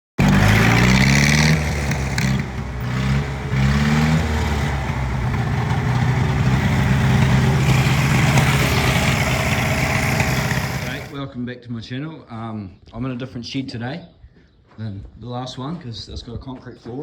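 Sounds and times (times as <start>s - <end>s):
tractor engine revving and idling: 0.0s - 11.2s.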